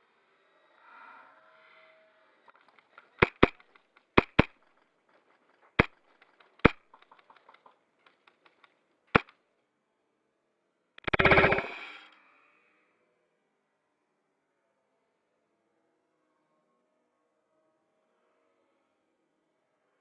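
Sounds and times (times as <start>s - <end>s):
bb clicks: 2.6s - 9.3s, 11.0s - 11.8s
airsoft guns firing: 3.2s - 4.6s, 11.0s - 11.8s
distant shots: 3.2s - 4.6s, 11.0s - 11.9s.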